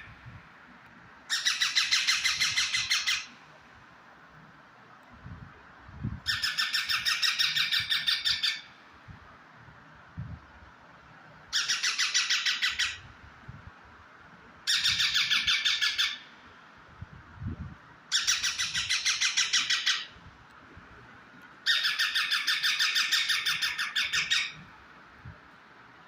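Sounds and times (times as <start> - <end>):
parrot calling shrilly: 1.3 - 3.3, 6.3 - 8.7, 11.5 - 13.0, 14.7 - 16.3, 18.1 - 20.1, 21.6 - 24.6.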